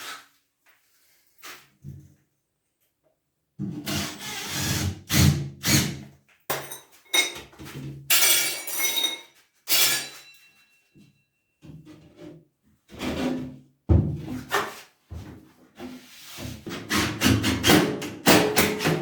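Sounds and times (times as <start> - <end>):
hard objects clattering and clinking: 6.5 - 7.5, 8.1 - 10.6.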